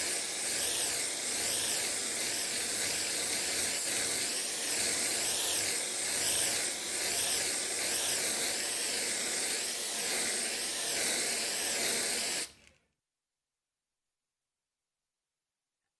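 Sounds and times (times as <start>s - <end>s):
spray paint can hissing: 0.0s - 12.5s.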